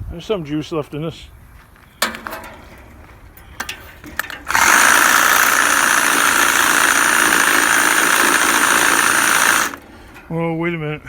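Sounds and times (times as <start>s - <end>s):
reciprocating saw running: 4.4s - 9.9s.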